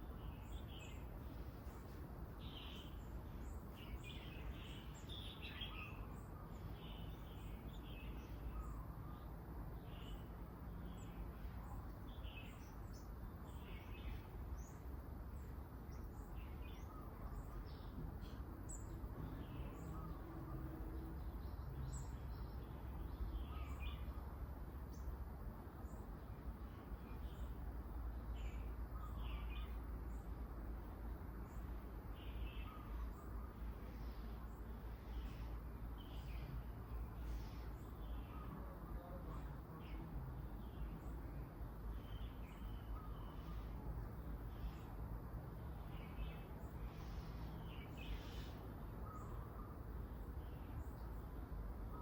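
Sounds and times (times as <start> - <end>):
small birds chirping: 0.0 - 52.0.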